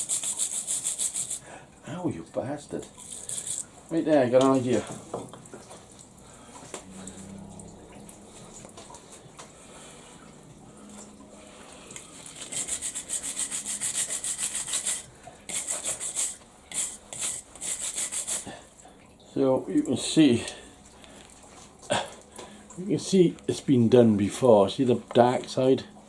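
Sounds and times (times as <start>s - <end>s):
scrubbing on metal: 0.0s - 1.5s, 2.8s - 5.7s, 12.0s - 18.6s.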